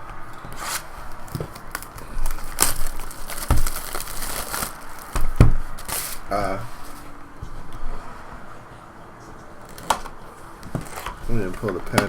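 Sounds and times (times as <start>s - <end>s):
plastic wrapping tearing and crinkling: 0.4s - 7.0s, 9.6s - 12.0s
dull knocks: 5.2s - 5.7s.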